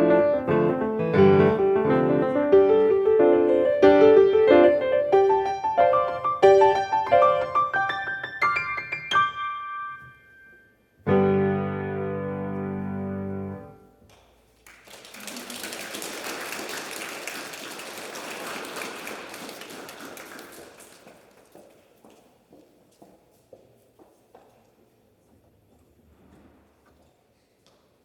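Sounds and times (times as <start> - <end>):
solo piano playing: 0.0 - 10.4, 11.0 - 13.9
audience applauding: 14.6 - 21.6.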